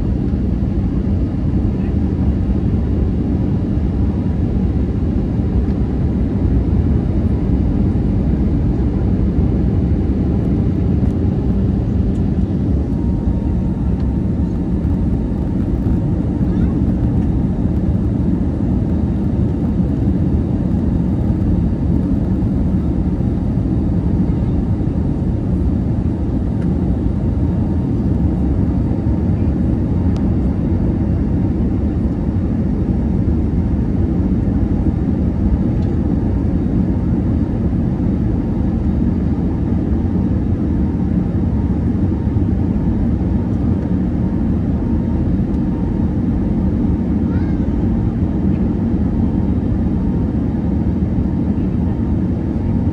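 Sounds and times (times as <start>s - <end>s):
airliner cabin noise: 0.0s - 52.9s.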